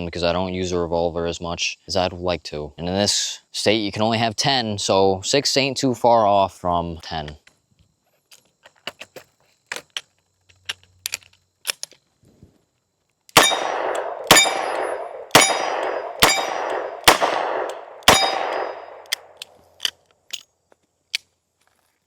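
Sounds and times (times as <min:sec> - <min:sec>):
revolver shots with echo: 0:13.4 - 0:19.0.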